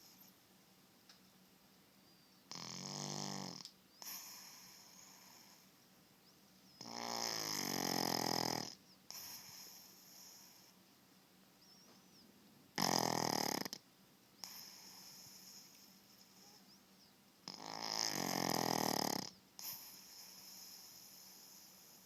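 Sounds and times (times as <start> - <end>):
dog snoring: 2.5 - 5.7, 6.8 - 10.8, 12.8 - 13.8, 14.4 - 16.6, 17.4 - 22.0.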